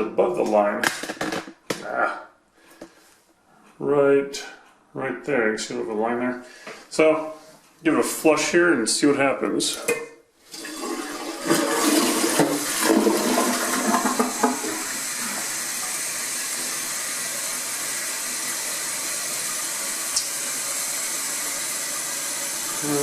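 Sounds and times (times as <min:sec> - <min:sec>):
toilet flushing: 0:10.5 - 0:23.0.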